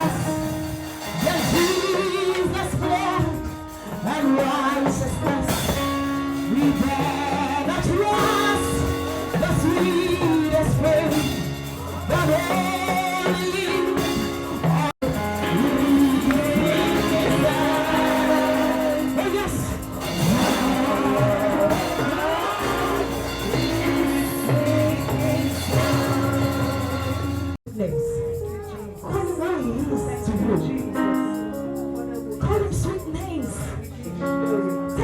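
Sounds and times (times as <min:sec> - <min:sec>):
held instrumental accompaniment: 0:00.0 - 0:35.0
person singing: 0:06.5 - 0:27.6.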